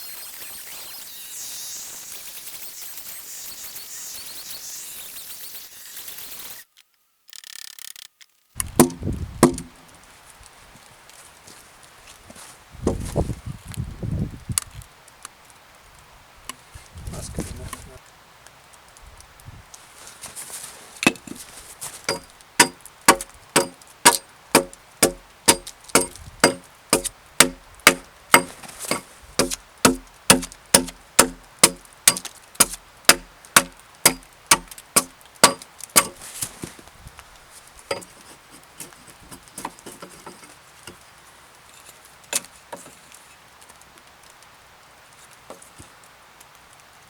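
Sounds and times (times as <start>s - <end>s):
axe chopping a log: 8.6s - 9.8s, 22.1s - 36.2s.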